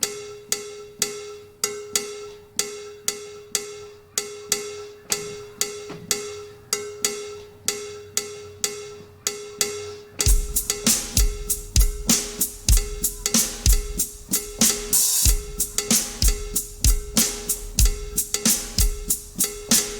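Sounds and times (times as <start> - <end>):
drum kit with kick drum: 10.2 - 19.9.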